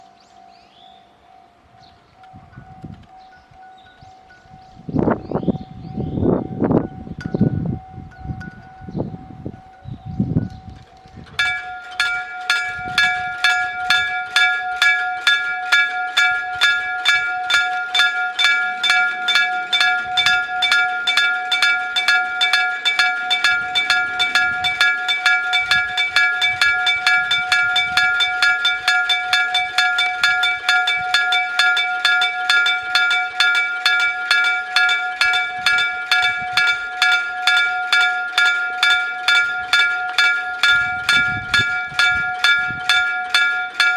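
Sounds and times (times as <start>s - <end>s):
level crossing bell ringing: 10.9s - 43.9s.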